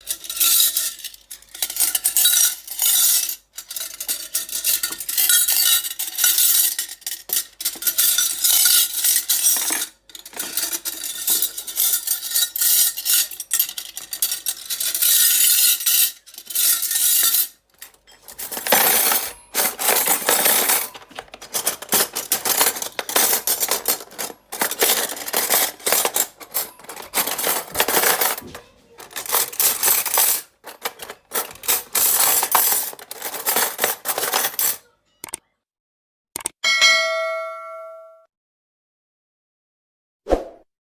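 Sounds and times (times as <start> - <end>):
cutlery clinking together: 3.8 - 34.8.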